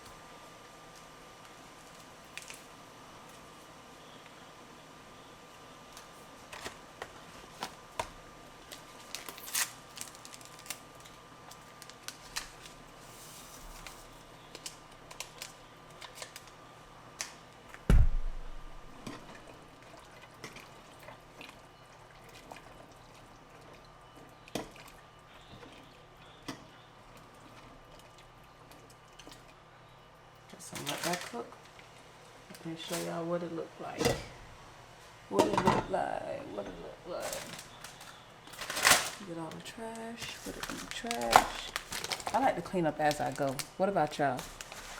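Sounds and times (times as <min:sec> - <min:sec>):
loud thump: 0:17.9 - 0:18.8
soft wet liquid sounds: 0:19.3 - 0:30.7.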